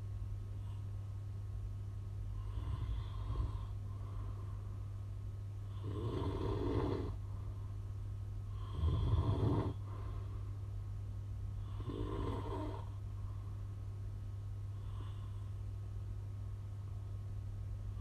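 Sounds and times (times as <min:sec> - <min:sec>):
steady low hum: 0:00.0 - 0:18.0
man snoring: 0:02.4 - 0:03.7, 0:05.7 - 0:07.2, 0:08.6 - 0:09.8, 0:11.6 - 0:12.9.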